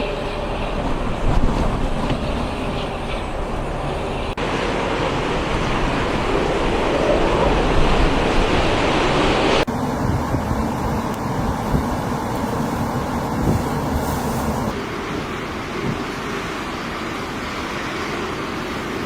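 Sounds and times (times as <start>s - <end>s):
wind blowing: 0.0s - 19.0s.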